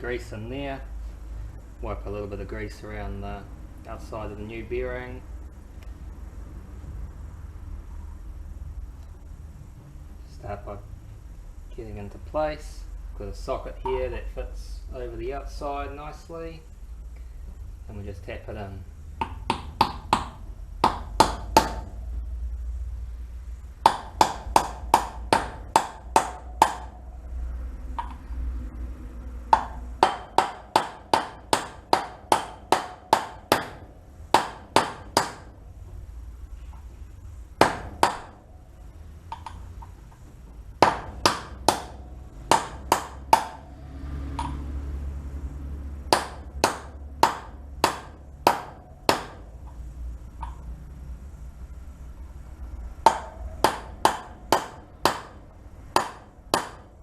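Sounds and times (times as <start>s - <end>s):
hammer tapping on metal: 19.2s - 21.9s, 23.8s - 27.0s, 28.0s - 28.2s, 29.5s - 35.5s, 37.6s - 38.4s, 40.8s - 43.6s, 44.4s - 44.6s, 46.1s - 49.8s, 53.0s - 56.9s.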